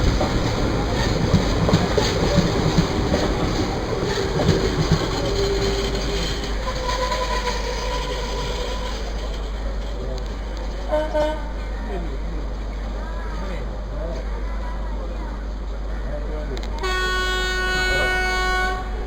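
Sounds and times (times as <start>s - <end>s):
train wheels clattering over rail joints: 0.0s - 11.0s
faint wheel squeal: 5.3s - 10.1s.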